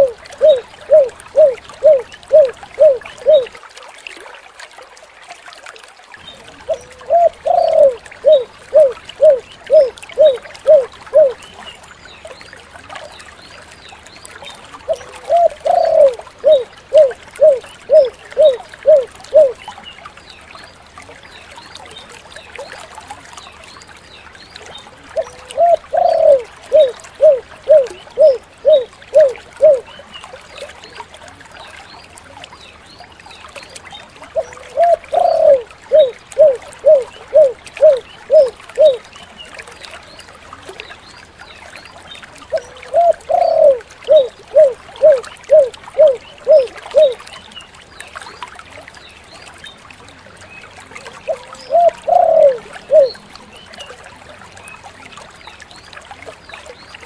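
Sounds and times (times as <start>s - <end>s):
dove cooing: 0.0s - 3.5s, 6.7s - 11.4s, 14.9s - 19.6s, 25.2s - 29.8s, 34.4s - 39.0s, 42.5s - 47.2s, 51.3s - 53.2s.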